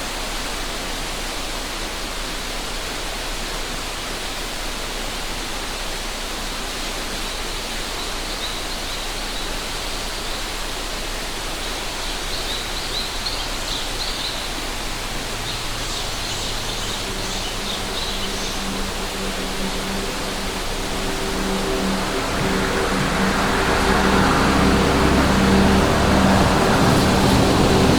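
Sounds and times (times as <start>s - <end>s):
mountain river rushing: 0.0s - 27.9s
low steady hum: 15.2s - 27.9s.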